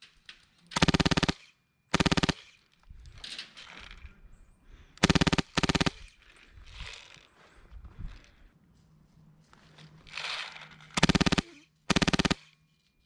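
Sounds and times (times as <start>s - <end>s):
airsoft gun full-auto bursts: 0.8s - 2.5s, 5.0s - 6.0s, 11.0s - 12.5s
rustling and movement: 2.0s - 13.0s.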